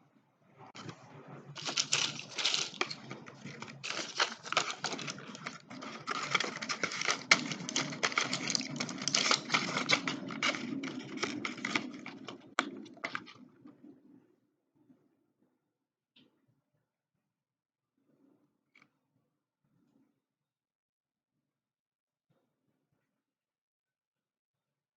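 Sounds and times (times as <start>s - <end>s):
packaging crinkling and clicking: 1.6s - 13.4s.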